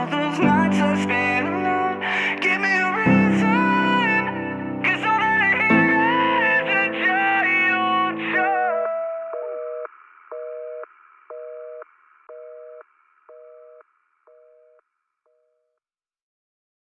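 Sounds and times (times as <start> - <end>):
telephone busy signal beeps: 9.4 - 14.8.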